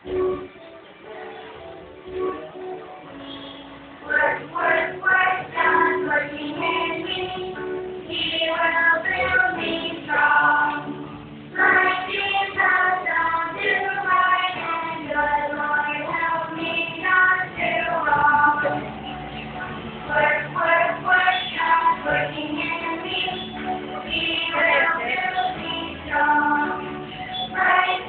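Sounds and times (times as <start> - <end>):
music: 0.0 - 28.0
person singing: 20.1 - 28.0.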